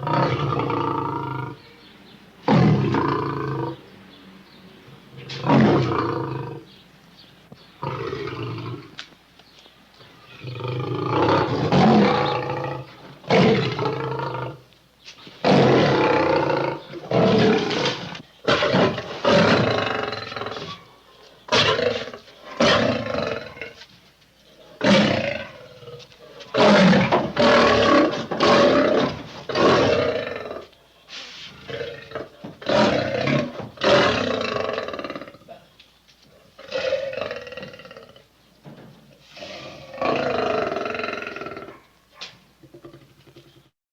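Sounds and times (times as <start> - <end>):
animal roars and snarls: 0.0 - 1.6, 2.4 - 3.8, 5.1 - 6.7, 7.8 - 9.0, 10.3 - 14.7, 15.4 - 20.9, 21.5 - 23.9, 24.8 - 30.7, 31.3 - 35.6, 36.6 - 38.3, 39.2 - 41.9.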